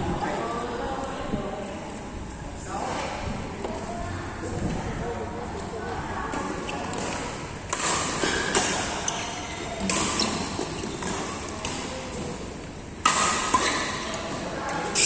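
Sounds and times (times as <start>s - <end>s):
badminton rackets hitting shuttlecock: 6.9s - 12.3s, 13.0s - 14.4s.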